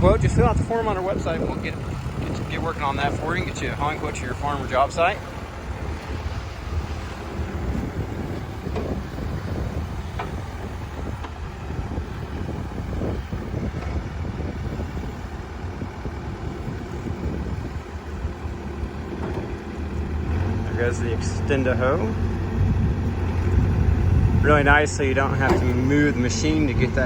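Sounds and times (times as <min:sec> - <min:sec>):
backhoe diesel engine running: 0:00.0 - 0:27.0
light knocks: 0:25.4 - 0:25.9.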